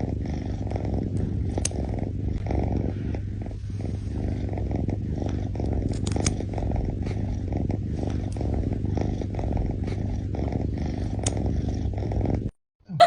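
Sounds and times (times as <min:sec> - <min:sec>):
cat purring: 0:00.0 - 0:12.6
faint clicks: 0:01.2 - 0:01.8, 0:05.9 - 0:06.4, 0:11.2 - 0:11.4.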